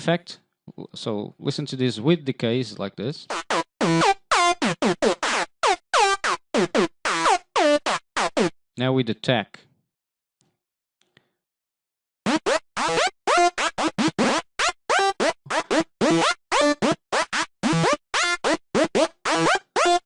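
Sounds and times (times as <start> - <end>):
synth lead choppy reversed notes: 3.3 - 8.5, 12.3 - 20.0.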